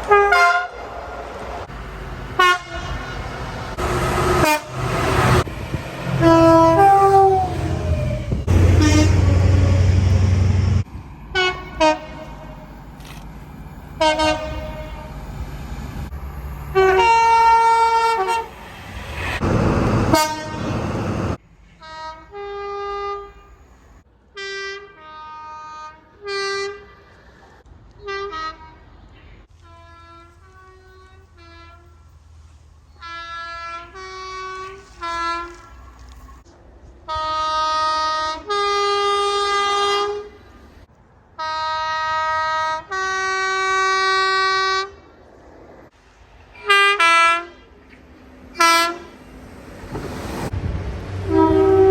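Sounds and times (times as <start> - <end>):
train horn blasts: 0.0 - 0.9, 2.4 - 10.4, 11.3 - 12.7, 14.0 - 15.3, 16.7 - 18.6, 19.3 - 23.8, 24.4 - 27.1, 28.0 - 28.8, 29.5 - 32.2, 33.0 - 36.0, 37.1 - 40.4, 41.4 - 45.0, 46.6 - 47.7, 48.5 - 49.2, 51.2 - 51.9
passing train rumble: 0.0 - 51.9.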